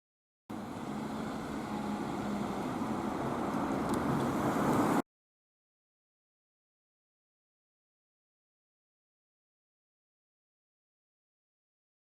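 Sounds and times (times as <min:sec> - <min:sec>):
vehicle noise hum: 0:00.5 - 0:05.0.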